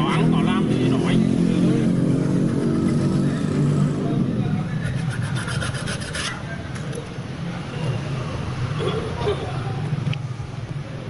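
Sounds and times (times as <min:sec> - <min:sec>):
street traffic rumble: 0:00.0 - 0:11.0
rasping strokes on a shoe: 0:04.6 - 0:06.5.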